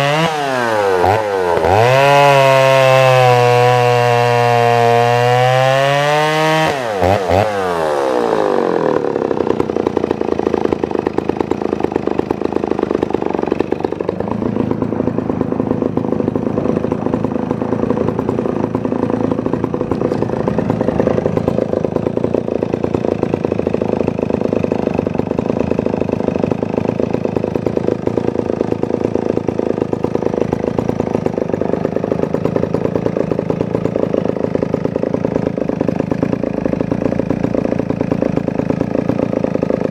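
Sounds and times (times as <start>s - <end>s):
chainsaw engine revs falling then idling: 0.0s - 39.9s.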